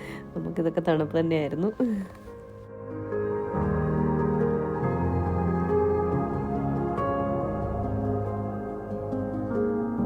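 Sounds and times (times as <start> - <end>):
soft ambient music with held chords: 0.0 - 10.0.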